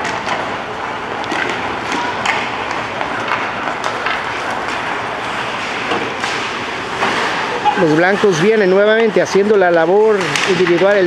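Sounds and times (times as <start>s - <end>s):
hockey sticks and puck clacking: 0.0s - 8.4s, 10.2s - 11.0s
skates scraping ice: 0.0s - 8.4s
arena crowd noise: 0.0s - 11.0s.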